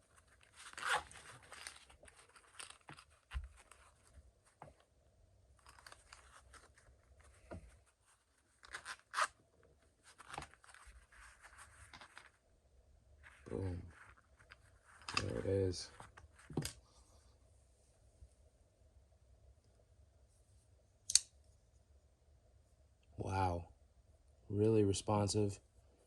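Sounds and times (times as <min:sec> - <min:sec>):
packaging rustling and tearing: 0:00.0 - 0:04.2.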